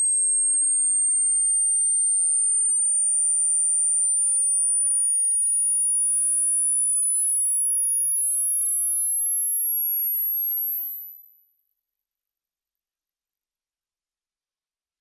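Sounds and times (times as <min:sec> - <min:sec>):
high-pitched sine tone gliding upward: 0:02.0 - 0:04.4, 0:10.5 - 0:15.0.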